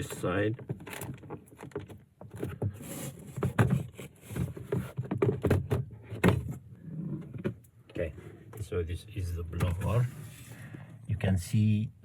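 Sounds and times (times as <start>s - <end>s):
plastic scraping: 0.0s - 11.2s.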